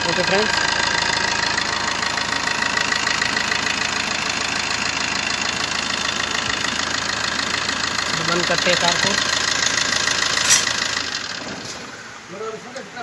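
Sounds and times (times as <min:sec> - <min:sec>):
diesel engine idling: 0:00.0 - 0:13.0
man speaking: 0:08.2 - 0:09.2.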